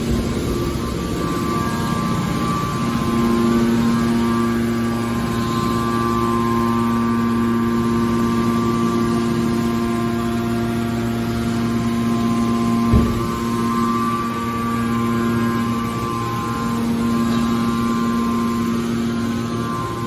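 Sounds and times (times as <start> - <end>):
hydraulic power unit humming: 0.0 - 20.0
single knock: 12.9 - 13.4.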